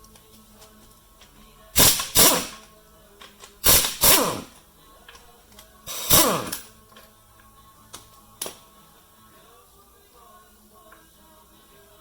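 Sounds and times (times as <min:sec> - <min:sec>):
power tool whirring: 0:01.8 - 0:02.6, 0:03.6 - 0:04.6, 0:05.9 - 0:06.7.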